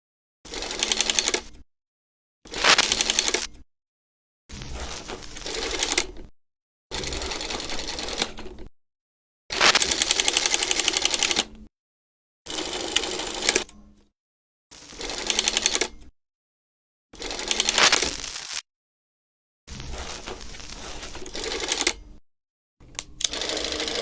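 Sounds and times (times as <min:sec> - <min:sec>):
film projector clattering: 0:06.9 - 0:08.5.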